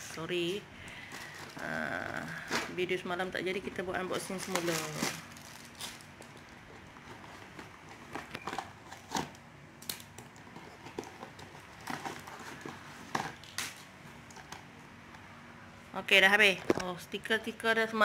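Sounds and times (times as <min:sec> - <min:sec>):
plastic packaging crinkling: 0:00.9 - 0:02.8, 0:04.2 - 0:14.4.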